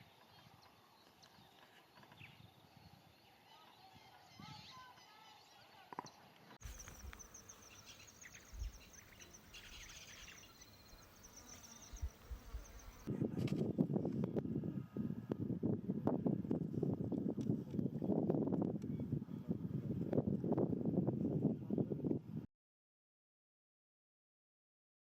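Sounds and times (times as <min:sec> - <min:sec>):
faint outdoor ambience: 0:00.0 - 0:13.3
high pulsing insect trill: 0:06.6 - 0:13.1
small bird chirps: 0:06.6 - 0:13.1.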